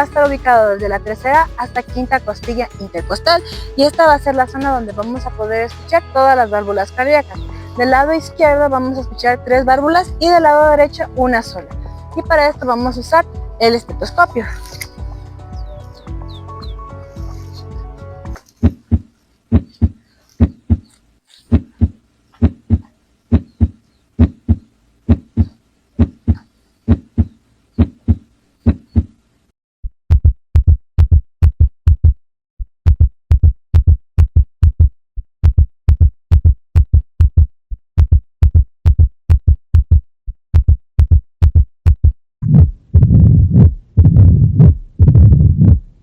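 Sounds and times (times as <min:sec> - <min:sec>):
heartbeat through stethoscope: 0:09.6 - 0:14.2, 0:18.6 - 0:29.2, 0:30.1 - 0:32.2, 0:32.9 - 0:46.0.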